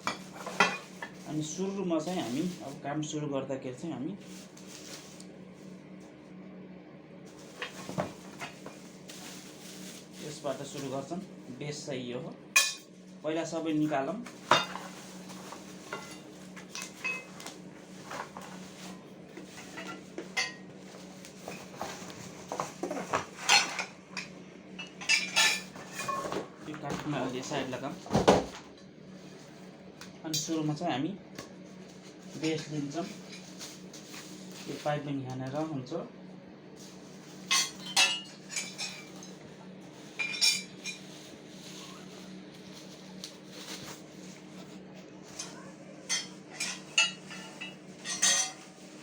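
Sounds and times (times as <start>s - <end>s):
steady low hum: 0.0s - 49.0s
metal parts clinking and clattering: 46.1s - 48.6s.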